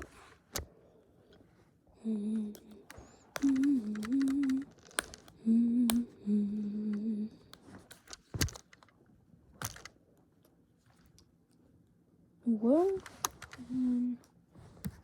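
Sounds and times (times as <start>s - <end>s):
person humming: 2.0s - 7.5s.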